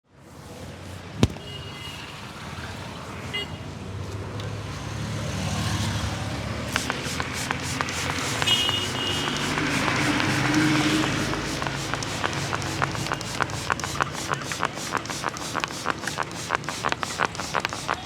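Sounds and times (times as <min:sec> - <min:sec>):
passing vehicles rumbling: 0:01.0 - 0:14.1
sharp clicks: 0:06.7 - 0:18.0
vehicle horn toots: 0:08.4 - 0:09.5.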